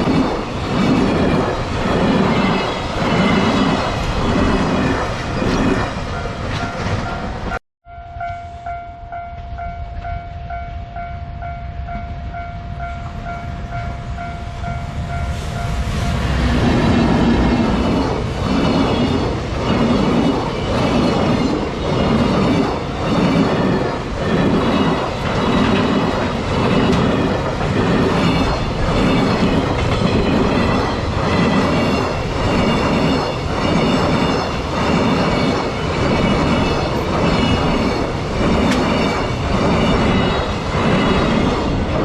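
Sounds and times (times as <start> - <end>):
train wheels clacking on rails: 13.0 - 42.0.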